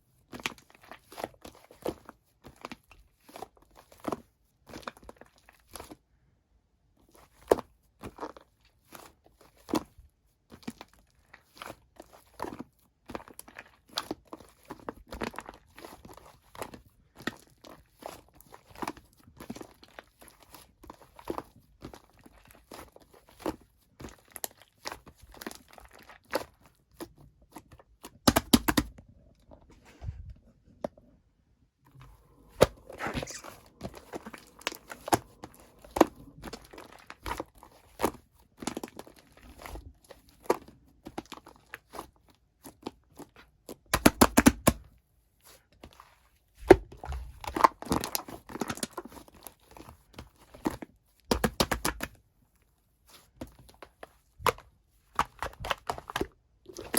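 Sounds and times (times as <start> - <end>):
slime crackling and popping: 32.4 - 39.6.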